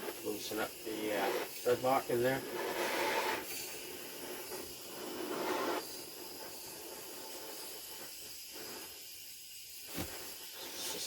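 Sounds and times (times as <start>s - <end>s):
torch flame hissing: 0.0s - 11.0s.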